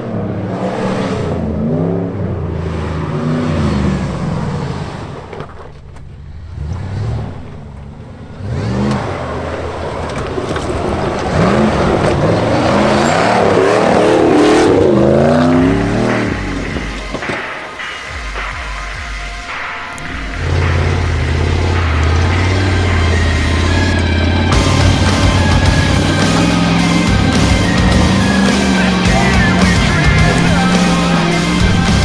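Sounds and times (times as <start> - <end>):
car engine revving: 0.0 - 32.0.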